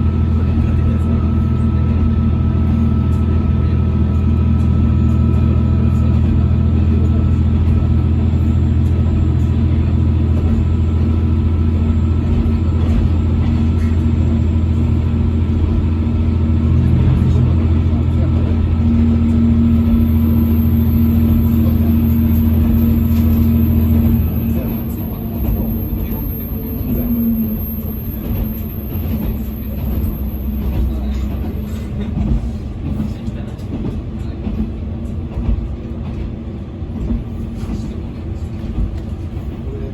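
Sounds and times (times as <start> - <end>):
diesel engine drone: 0.0 - 33.8.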